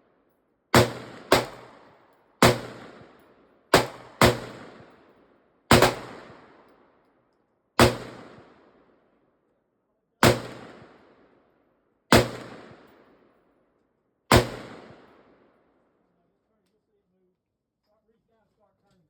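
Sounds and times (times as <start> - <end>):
gunshots with echo: 5.7 - 6.5, 7.8 - 8.6, 10.2 - 11.0, 12.1 - 13.0, 14.3 - 15.2.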